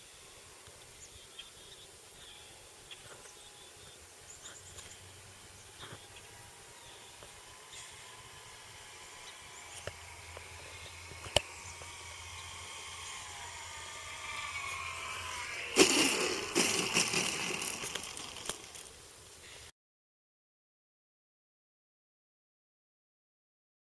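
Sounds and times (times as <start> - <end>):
model airplane whine: 0.0 - 19.7
sharp clicks: 9.2 - 12.0.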